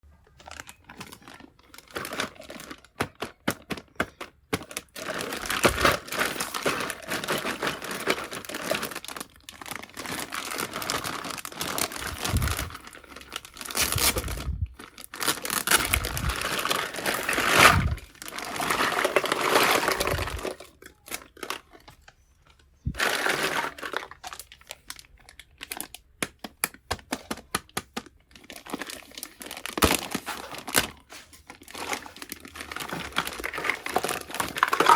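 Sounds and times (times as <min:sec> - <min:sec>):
plastic packaging crinkling: 0:00.3 - 0:34.9.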